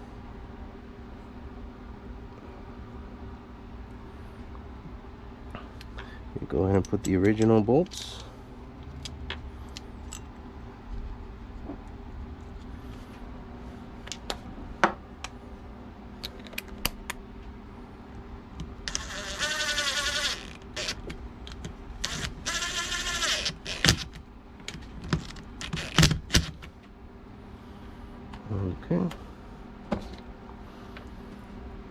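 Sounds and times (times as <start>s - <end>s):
whirring power tool: 18.9s - 21.0s, 22.0s - 24.2s.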